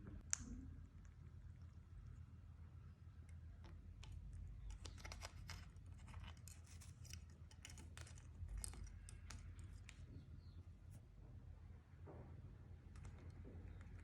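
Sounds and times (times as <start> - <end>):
low steady hum: 0.0 - 14.0
rapid scratching and clicking: 3.6 - 10.0.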